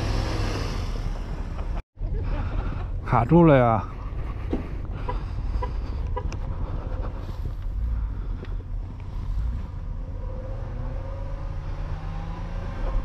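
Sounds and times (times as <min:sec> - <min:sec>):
vehicle engine revving: 0:00.0 - 0:01.8, 0:05.1 - 0:13.0
heavy low rumble: 0:00.0 - 0:11.8.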